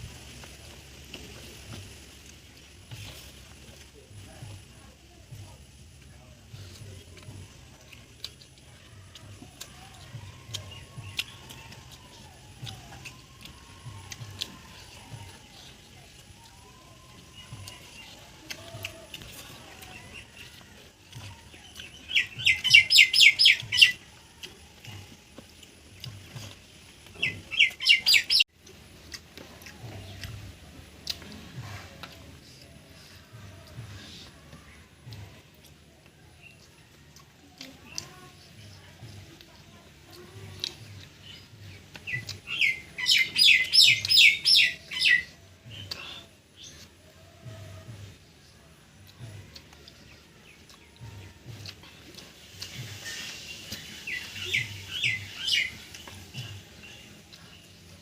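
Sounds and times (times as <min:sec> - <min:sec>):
bird calling sharp notes: 0:22.0 - 0:24.1, 0:27.2 - 0:28.4, 0:42.1 - 0:45.3.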